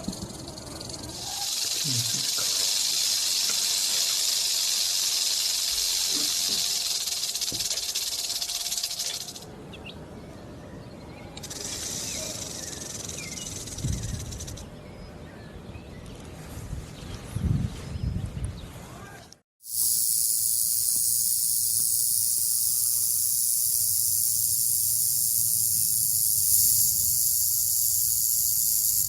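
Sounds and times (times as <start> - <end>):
rattlesnake rattling: 0.0 - 9.5, 11.4 - 14.6, 19.6 - 29.0.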